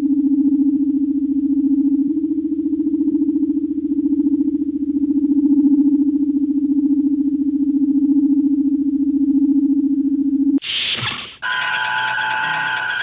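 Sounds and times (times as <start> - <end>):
higher electronic tone: 10.8 - 13.0.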